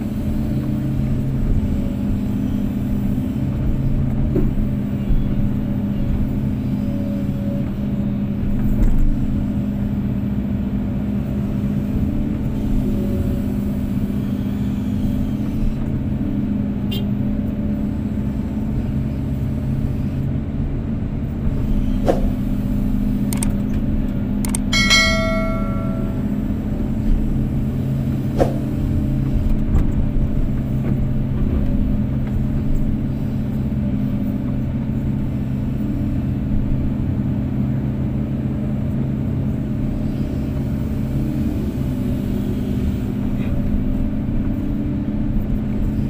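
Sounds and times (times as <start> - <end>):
excavator diesel engine running: 0.0 - 46.0
ringing metallic tone: 24.7 - 26.6.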